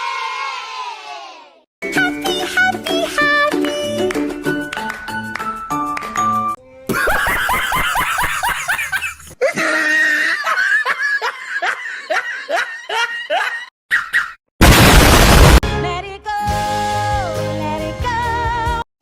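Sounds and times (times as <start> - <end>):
quick high comic laughter: 11.6 - 14.4.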